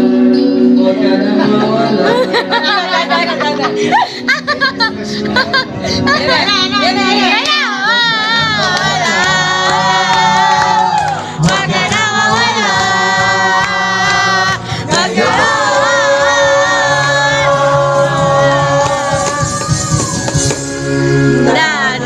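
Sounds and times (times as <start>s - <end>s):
instrumental backing: 0.0s - 22.0s
person singing long notes: 7.7s - 22.0s.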